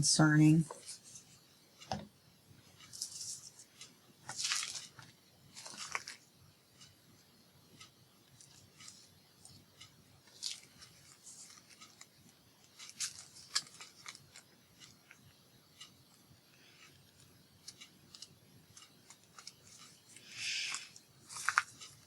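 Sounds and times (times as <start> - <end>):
paper and craft tools rustling: 2.8 - 3.7, 4.3 - 6.2, 19.1 - 22.0.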